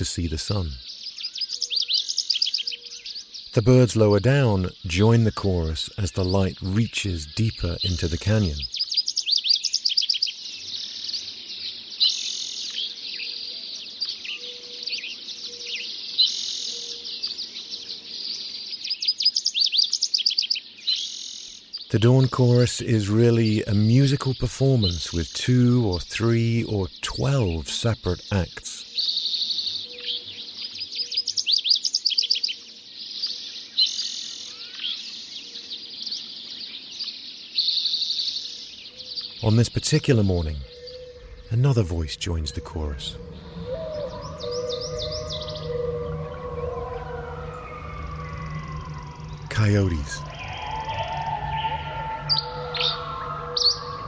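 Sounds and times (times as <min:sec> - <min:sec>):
songbirds singing: 0:00.0 - 0:54.0
buzzy bird trill: 0:38.1 - 0:54.0
sharp falling bird notes: 0:39.2 - 0:54.0.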